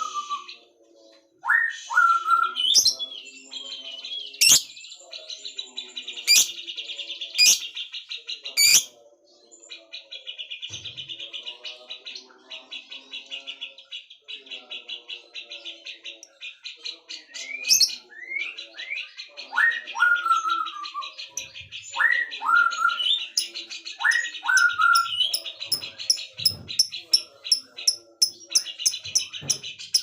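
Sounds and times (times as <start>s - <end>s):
high bird chirps: 20.0s - 30.0s
high bird trill: 21.0s - 30.0s.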